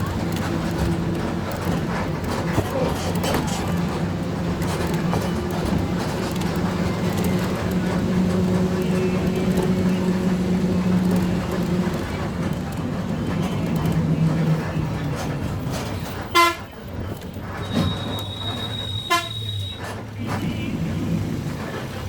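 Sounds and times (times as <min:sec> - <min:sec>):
vehicle engine and road noise: 0:00.0 - 0:22.0
vehicle horn toot: 0:16.3 - 0:16.7, 0:17.6 - 0:19.8.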